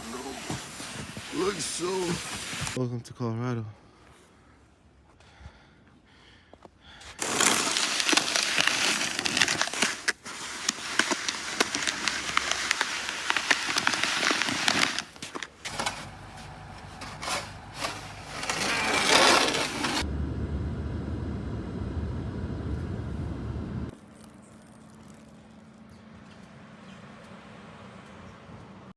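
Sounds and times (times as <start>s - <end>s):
snow crunching and scraping: 0.0s - 2.8s, 7.0s - 20.1s
low rumble: 15.8s - 23.9s.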